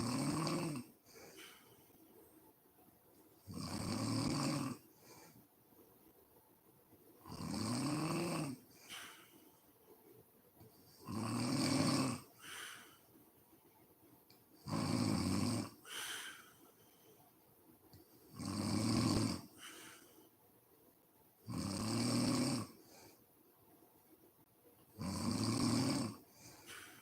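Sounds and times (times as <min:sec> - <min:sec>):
woman snoring: 0:00.0 - 0:01.6, 0:03.5 - 0:04.9, 0:07.3 - 0:09.1, 0:11.0 - 0:12.8, 0:14.6 - 0:16.4, 0:18.3 - 0:20.0, 0:21.5 - 0:23.1, 0:25.0 - 0:26.9
soft breath: 0:01.0 - 0:02.6, 0:04.9 - 0:05.9, 0:08.7 - 0:10.8, 0:12.4 - 0:13.2, 0:15.8 - 0:18.3, 0:19.5 - 0:20.5, 0:26.2 - 0:27.0.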